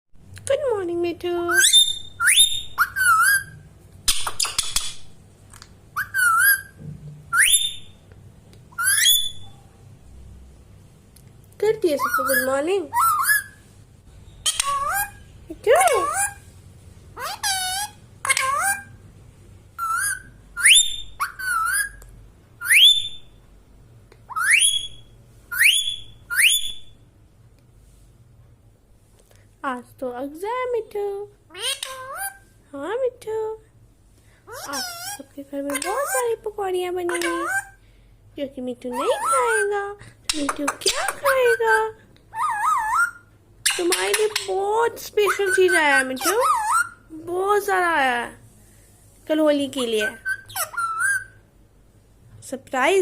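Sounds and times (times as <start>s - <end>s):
parrot whistled calls: 1.5s - 3.6s, 5.9s - 8.0s, 8.7s - 9.6s, 12.0s - 13.6s, 14.4s - 15.3s, 17.2s - 19.0s, 19.8s - 22.0s, 22.6s - 23.4s, 24.3s - 27.0s, 42.3s - 44.5s, 45.2s - 47.1s, 49.9s - 51.4s
parrot squawk: 1.5s - 4.9s, 5.9s - 7.9s, 8.8s - 9.6s, 12.0s - 13.6s, 14.4s - 16.5s, 17.2s - 19.0s, 19.8s - 22.0s, 24.3s - 26.9s, 31.5s - 32.4s, 34.5s - 36.3s, 37.1s - 37.8s, 38.9s - 39.7s, 40.5s - 44.5s, 45.2s - 47.1s, 49.8s - 51.4s.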